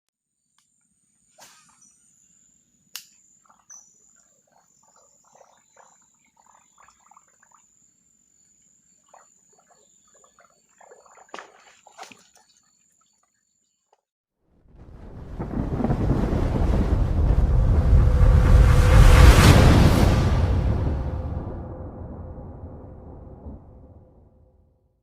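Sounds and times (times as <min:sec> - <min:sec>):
frog calls: 0:03.4 - 0:07.8.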